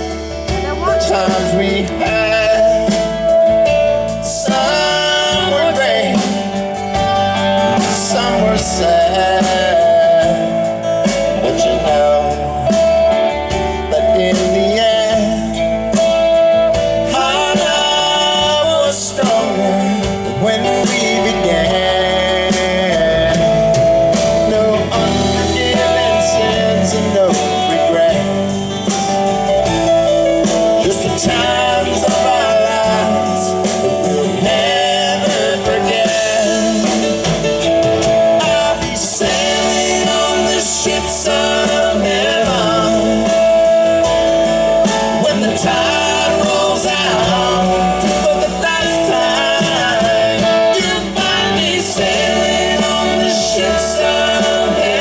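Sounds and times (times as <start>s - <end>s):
live country band playing: 0.0s - 55.0s
person singing: 0.0s - 55.0s.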